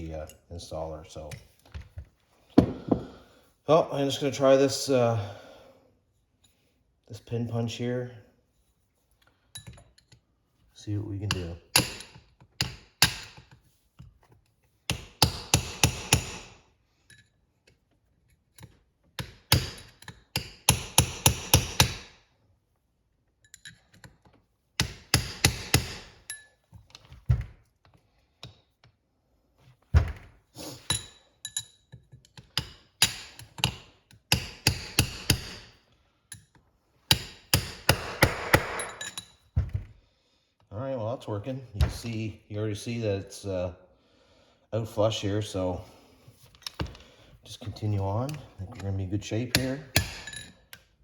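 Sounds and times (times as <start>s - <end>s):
hammer striking metal punch: 2.6s - 3.1s, 37.1s - 39.2s.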